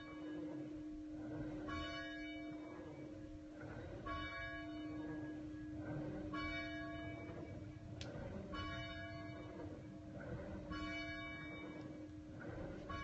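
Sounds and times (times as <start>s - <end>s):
low bell hum: 0.0s - 13.0s
church bell tolling: 1.7s - 2.8s, 4.1s - 7.9s, 8.5s - 10.1s, 10.7s - 12.3s.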